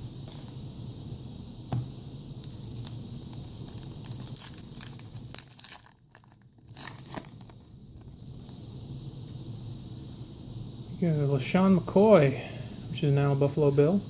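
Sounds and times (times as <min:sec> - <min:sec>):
foil wrapper crinkling and tearing: 0:02.4 - 0:08.6.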